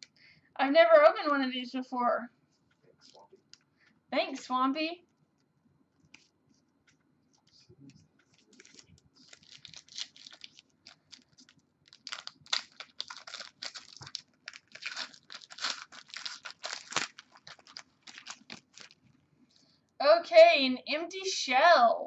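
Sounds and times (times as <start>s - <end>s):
wrapper tearing and crinkling: 8.3s - 19.0s.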